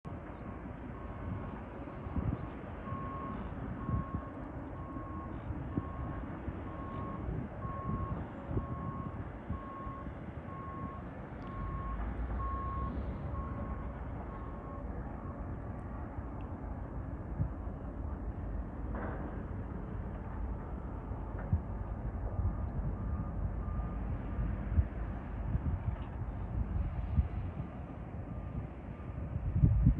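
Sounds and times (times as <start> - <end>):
reversing alarm beeping: 2.3 - 15.6, 22.2 - 24.2.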